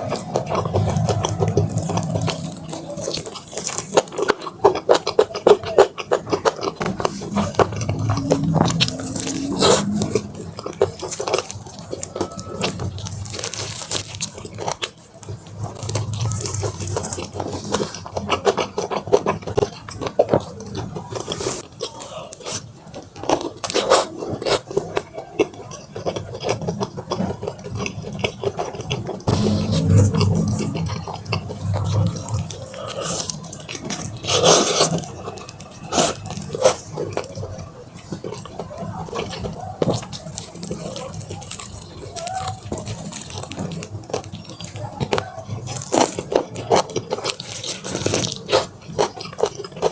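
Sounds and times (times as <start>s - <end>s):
crunching fried chicken: 0.0s - 49.9s
tearing meat: 0.0s - 49.9s.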